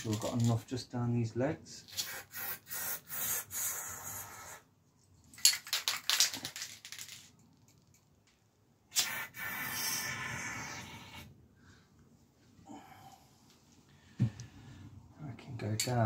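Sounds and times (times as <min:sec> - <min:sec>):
aerosol can spraying: 0:01.9 - 0:04.6, 0:09.0 - 0:09.6.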